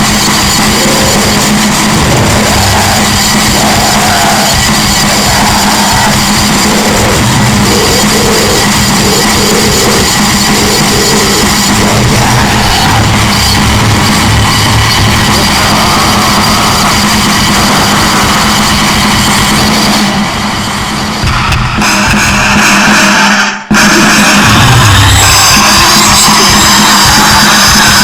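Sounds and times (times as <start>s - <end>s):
distorted rock music with drums: 0.0s - 28.0s.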